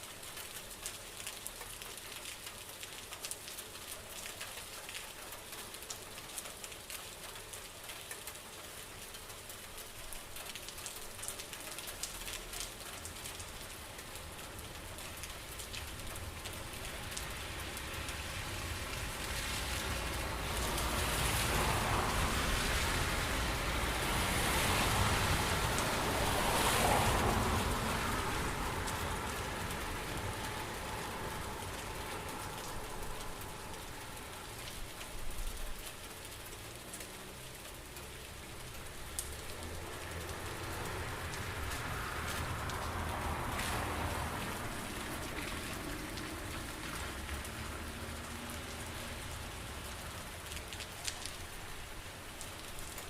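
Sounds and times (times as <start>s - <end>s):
steady rain falling: 0.0s - 53.0s.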